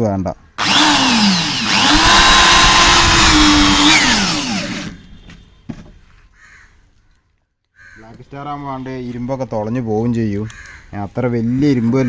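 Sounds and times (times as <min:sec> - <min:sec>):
power drill driving screw into metal: 0:00.6 - 0:05.0.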